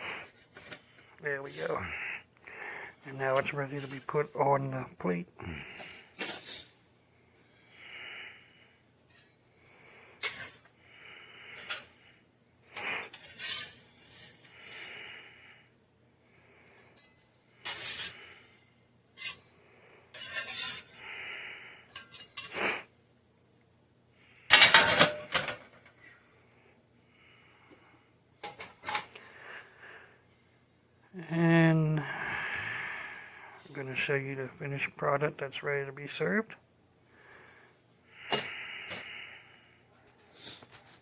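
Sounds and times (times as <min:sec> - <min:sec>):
utensil scraping on baking pan: 0:17.7 - 0:18.2, 0:20.2 - 0:21.0.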